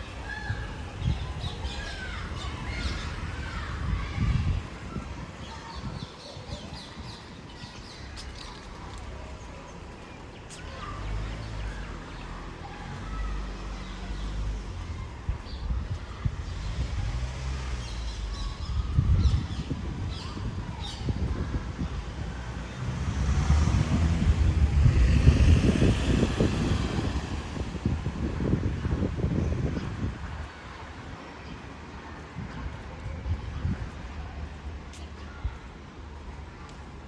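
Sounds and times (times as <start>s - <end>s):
small birds chirping: 0.0s - 27.8s.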